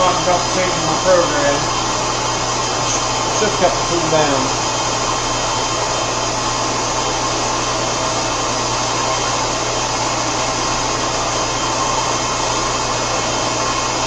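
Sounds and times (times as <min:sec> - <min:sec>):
constant low hum: 0:00.0 - 0:11.9
machine and spindle whir: 0:00.0 - 0:14.0.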